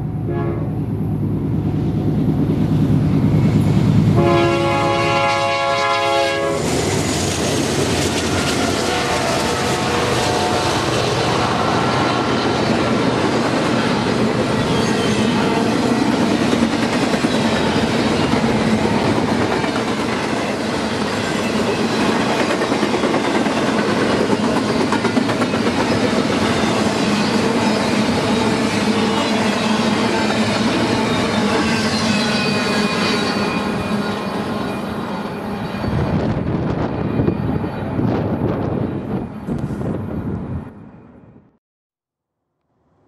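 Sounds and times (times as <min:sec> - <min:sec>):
freight train cars rolling: 0:00.0 - 0:40.5
locomotive air horn chord: 0:00.2 - 0:00.8, 0:04.1 - 0:06.7, 0:08.3 - 0:12.2.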